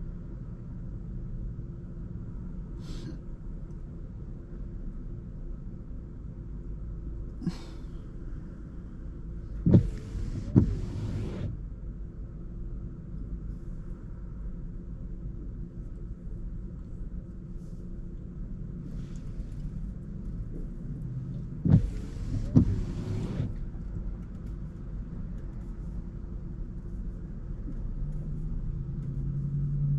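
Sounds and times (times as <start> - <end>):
car road and engine rumble: 0.0 - 29.9
thump: 9.7 - 11.4
loud swishing sweep: 9.7 - 11.5, 21.7 - 23.5.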